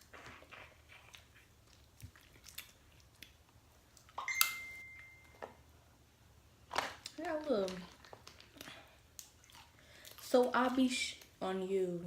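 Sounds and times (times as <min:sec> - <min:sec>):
person chewing and crunching: 0:00.0 - 0:04.2, 0:07.8 - 0:10.3
high ringing tone: 0:04.2 - 0:05.6.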